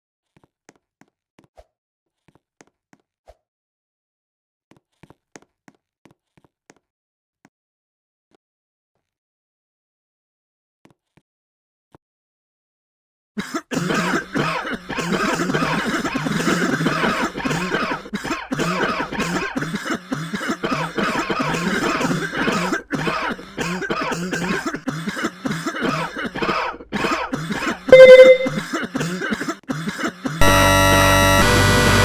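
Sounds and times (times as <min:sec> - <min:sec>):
person coughing: 0:13.4 - 0:30.4
loud beep tone: 0:27.9 - 0:28.6
loud harsh noisy music: 0:30.4 - 0:32.0
music: 0:30.4 - 0:32.0.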